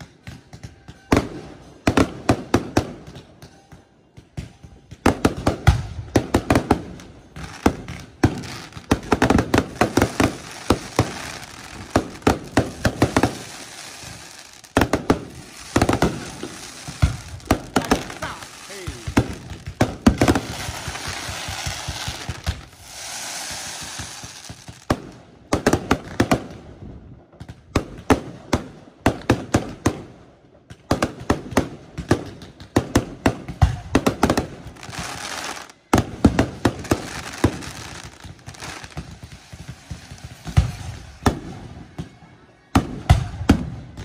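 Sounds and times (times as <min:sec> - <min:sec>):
fireworks bangs: 0:00.0 - 0:30.1, 0:30.7 - 0:44.0
fireworks crackling hiss: 0:06.4 - 0:26.6, 0:34.0 - 0:41.6.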